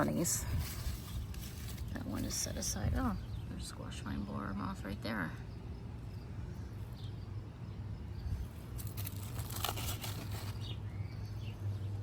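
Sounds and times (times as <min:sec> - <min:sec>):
plants rustling and crackling: 0:00.0 - 0:03.3, 0:08.5 - 0:11.0
low steady hum: 0:00.0 - 0:12.0.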